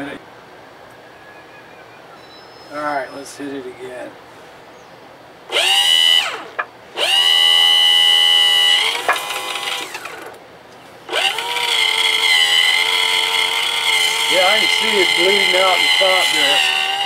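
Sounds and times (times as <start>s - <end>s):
electric pump motor whining: 5.5s - 10.4s, 11.1s - 17.0s.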